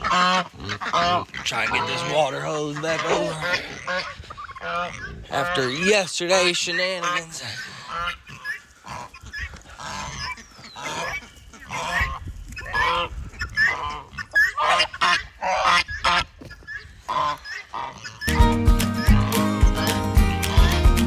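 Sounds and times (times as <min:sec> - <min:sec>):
farm fowl calling: 0:00.0 - 0:21.0
music: 0:18.3 - 0:21.0.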